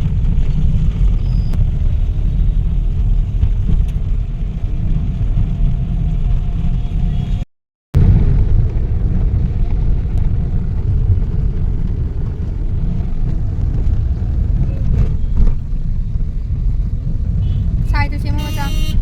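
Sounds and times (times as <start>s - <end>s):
vehicle rumble: 0.0s - 19.0s
wind buffeting microphone: 8.0s - 19.0s.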